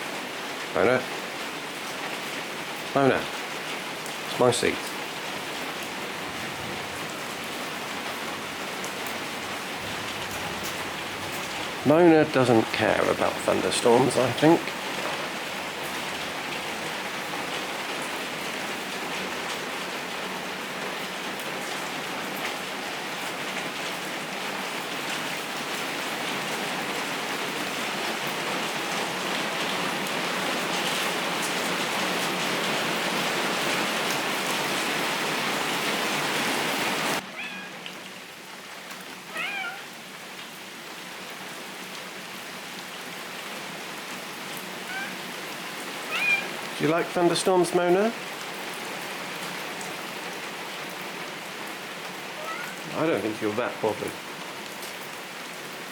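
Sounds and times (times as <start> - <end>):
heavy rain hissing: 0.0 - 55.9
cat meowing: 37.2 - 38.0, 39.3 - 40.0, 44.8 - 45.4, 46.0 - 46.7, 52.3 - 53.0.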